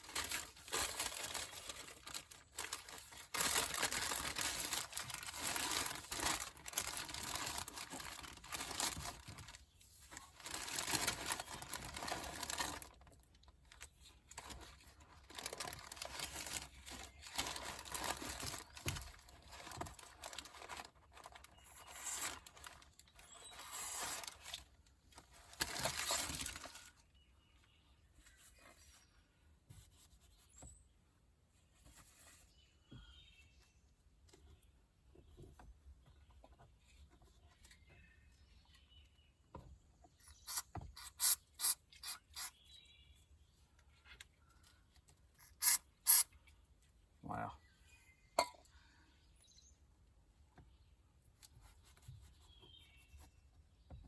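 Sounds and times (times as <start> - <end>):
paper crinkling and tearing: 0.0 - 27.0.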